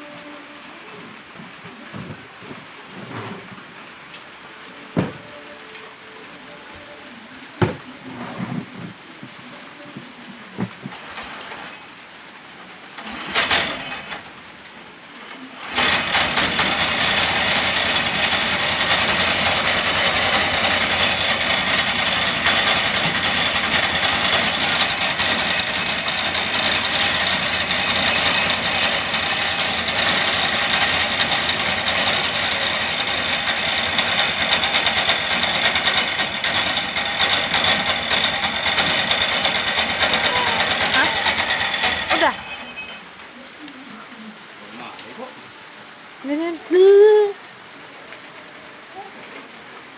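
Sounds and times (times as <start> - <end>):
small petrol engine starting: 10.6 - 11.9, 13.0 - 14.3, 15.6 - 42.9.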